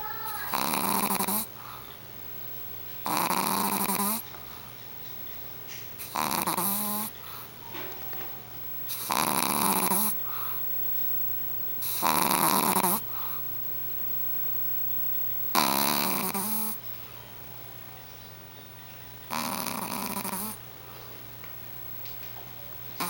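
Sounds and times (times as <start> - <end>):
puppy snoring: 0.0 - 1.9, 3.0 - 4.7, 6.0 - 16.9, 19.3 - 21.0.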